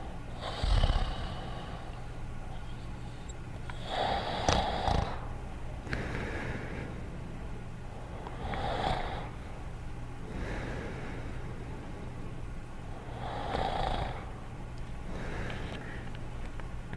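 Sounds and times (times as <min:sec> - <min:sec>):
soft airy breath: 0:00.0 - 0:16.5
steady low hum: 0:00.0 - 0:16.9
cartoon dog snoring: 0:00.4 - 0:01.9, 0:03.8 - 0:05.3, 0:08.3 - 0:09.4, 0:13.1 - 0:14.3.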